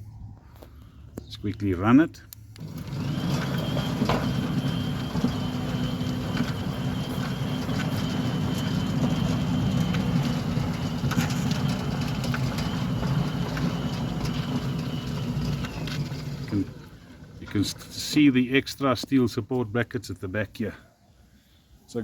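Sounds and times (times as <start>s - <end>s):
gate motor humming: 2.6s - 18.2s.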